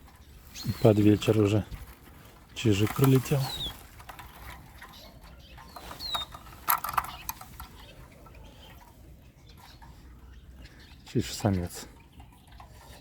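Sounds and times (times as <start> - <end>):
sharp clicks: 5.7 - 7.8
bird call sliding down: 5.8 - 7.6.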